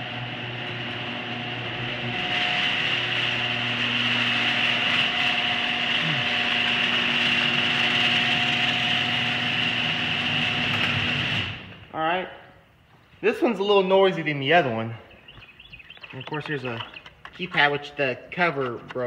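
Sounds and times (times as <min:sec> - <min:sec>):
garage door opener motor whine: 0:00.0 - 0:11.9.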